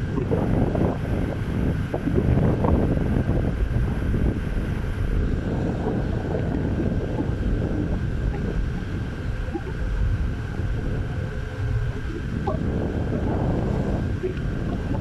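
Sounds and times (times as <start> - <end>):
faint steady whine: 0.0 - 15.0
wind buffeting microphone: 0.0 - 15.0.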